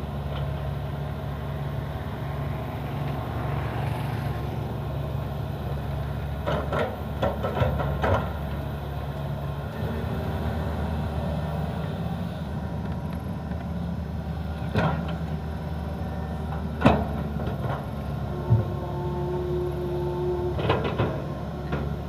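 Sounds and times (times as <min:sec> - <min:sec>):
excavator diesel engine running: 0:00.0 - 0:22.0.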